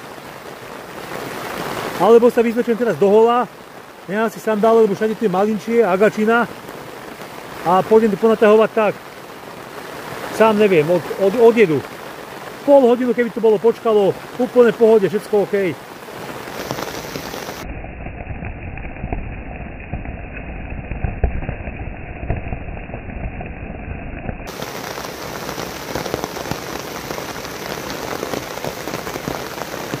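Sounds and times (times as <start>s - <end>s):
heavy rain on a tarp: 0.0s - 30.0s
low rumble: 17.5s - 24.5s.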